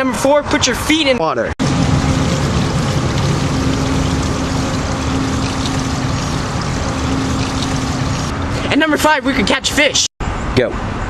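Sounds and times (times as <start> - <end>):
motor humming: 1.6 - 8.3
rushing noise: 1.6 - 8.8.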